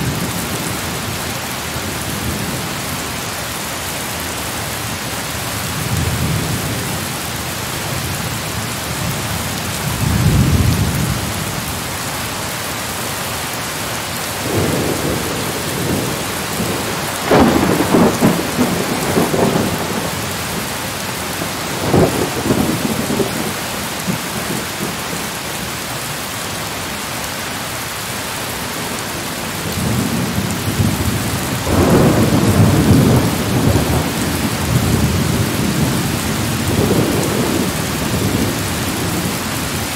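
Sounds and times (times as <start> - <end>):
heavy rain hissing: 0.0 - 39.9
thunder rumbling: 14.4 - 24.9, 29.5 - 39.9.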